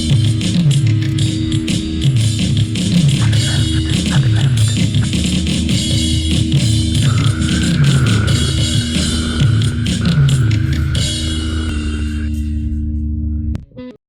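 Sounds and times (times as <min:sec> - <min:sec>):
drums: 0:00.0 - 0:12.9
distorted guitar riff: 0:00.0 - 0:14.0.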